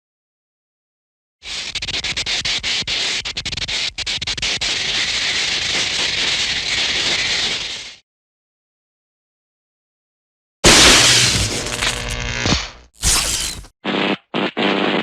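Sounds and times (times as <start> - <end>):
electric crackle and sizzle: 10.7 - 13.7.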